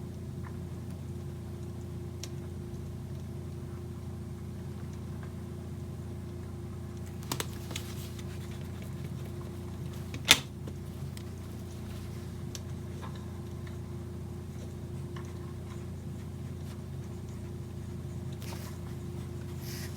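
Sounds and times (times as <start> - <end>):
low indoor hum: 0.0 - 19.9.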